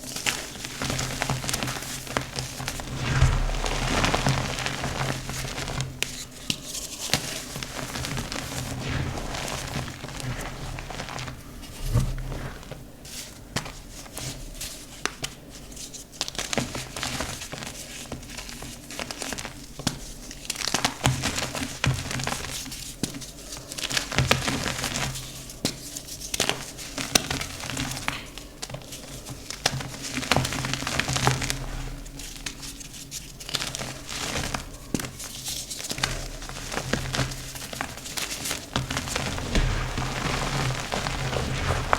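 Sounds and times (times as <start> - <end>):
chalk crunching by hand: 38.0 - 41.9.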